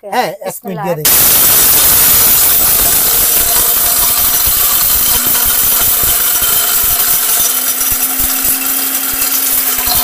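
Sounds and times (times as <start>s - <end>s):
electric spice grinder running: 1.1s - 10.0s.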